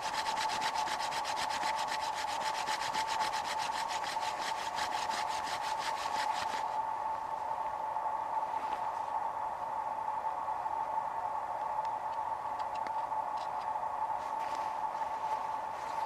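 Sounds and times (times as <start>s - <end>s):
hand drill spindle rasping: 0.0s - 6.7s
steady high hum: 0.0s - 16.0s.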